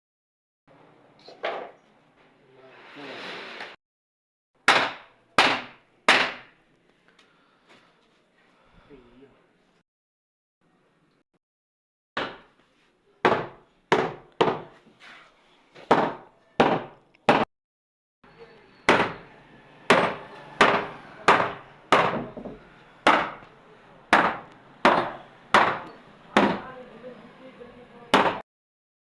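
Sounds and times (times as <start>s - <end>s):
hammer striking wood: 4.6s - 6.5s, 12.2s - 12.5s, 13.2s - 14.7s, 15.8s - 17.5s, 18.9s - 23.5s, 24.1s - 26.7s, 28.1s - 28.4s.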